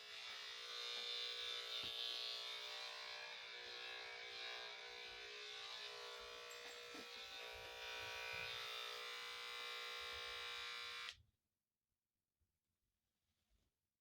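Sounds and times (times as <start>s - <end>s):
electric clippers buzzing: 0.0s - 11.2s.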